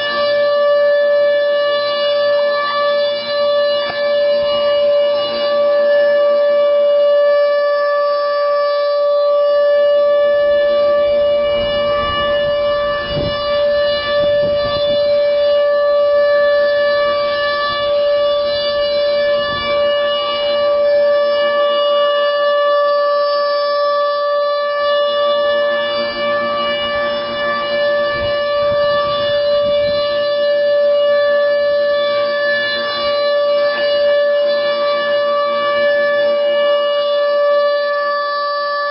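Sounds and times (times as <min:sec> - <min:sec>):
steady warning siren tone: 0:00.0 - 0:38.9.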